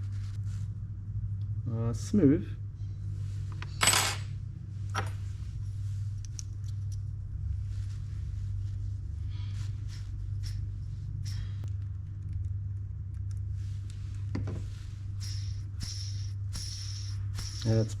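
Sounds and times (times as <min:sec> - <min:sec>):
steady low hum: 0:00.0 - 0:18.0
metal parts clicking and rustling: 0:03.6 - 0:04.3.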